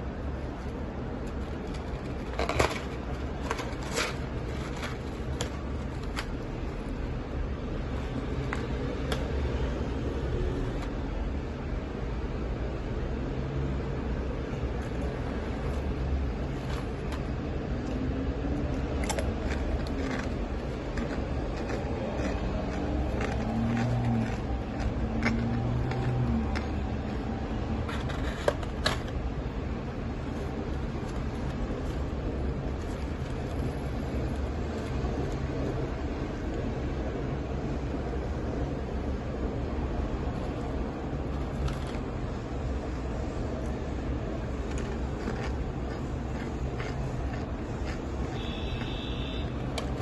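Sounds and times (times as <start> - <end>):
fried chicken skin crackling: 14.7 - 29.3
crunching bites of fried chicken: 18.6 - 27.2, 44.6 - 49.4.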